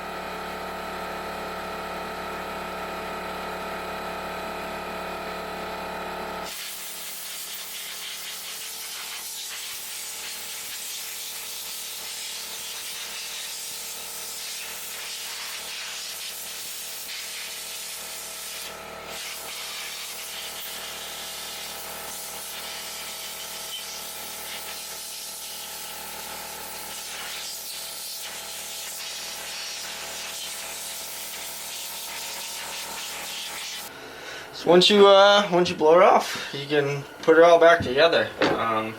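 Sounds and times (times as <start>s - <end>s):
compressed air blow gun hissing: 6.4s - 33.9s.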